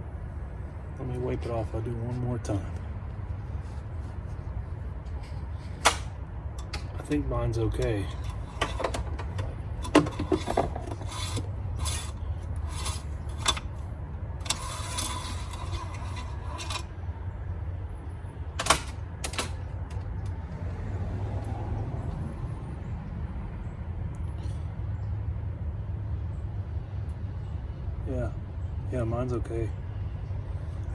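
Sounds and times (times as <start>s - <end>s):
dipstick scraping rub: 7.9s - 13.8s, 14.4s - 16.8s.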